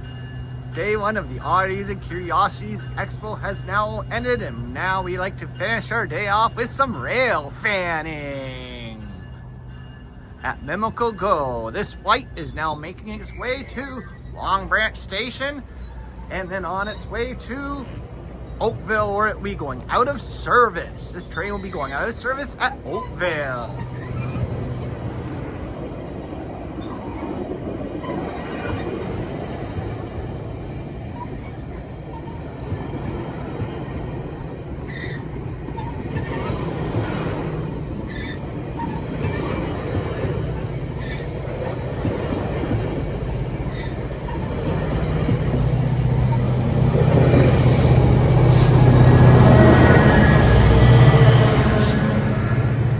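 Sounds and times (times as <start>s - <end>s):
train wheels squealing on rails: 0.0s - 52.9s.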